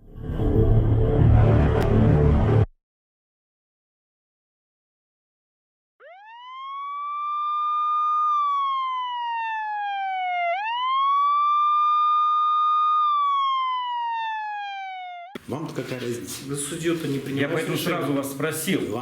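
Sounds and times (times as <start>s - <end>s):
wailing siren: 6.0s - 15.4s.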